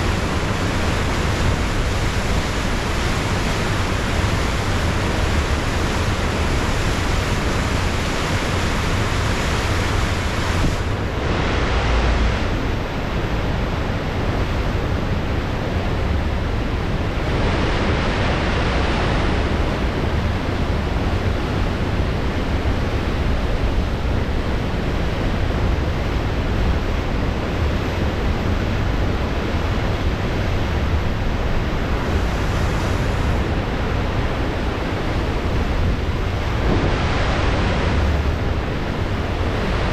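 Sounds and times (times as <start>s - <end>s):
ocean surf rushing: 0.0s - 39.9s
wind rumble on microphone: 0.0s - 39.9s.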